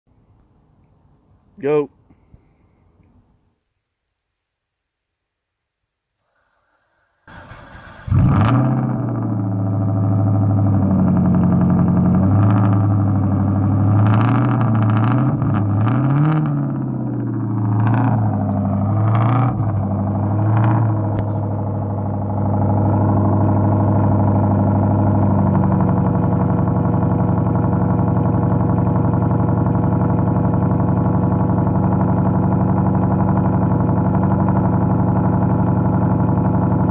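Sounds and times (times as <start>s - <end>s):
car engine idling: 6.6s - 36.9s
car engine cranking: 7.3s - 28.0s
car engine revving: 7.3s - 36.9s.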